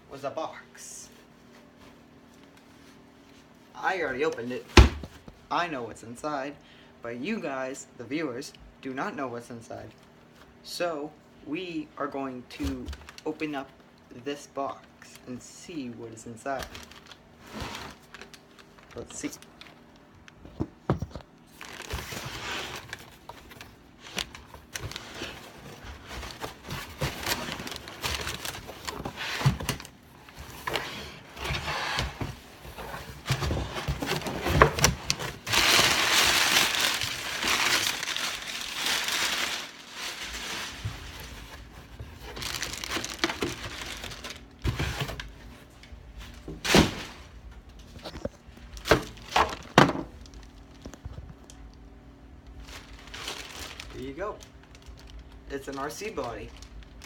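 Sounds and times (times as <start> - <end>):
packing paper crumpling: 16.6 - 20.1, 21.5 - 30.8, 33.3 - 45.3, 52.6 - 57.0.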